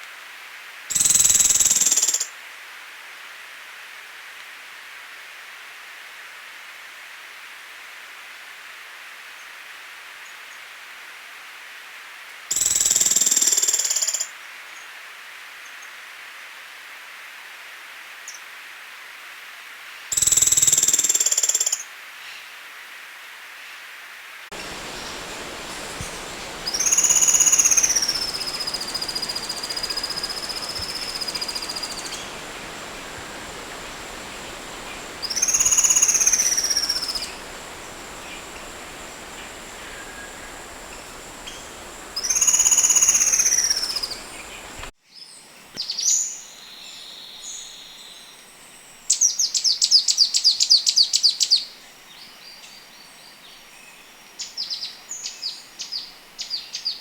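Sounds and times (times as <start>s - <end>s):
steady hiss: 24.5s - 45.0s
bird chirps and rattling trill: 24.6s - 44.8s
songbird whistled notes: 24.6s - 44.9s.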